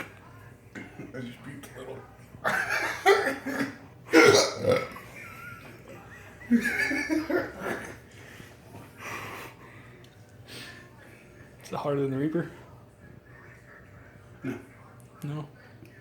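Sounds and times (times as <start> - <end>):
man burping and hiccuping: 3.1 - 5.0.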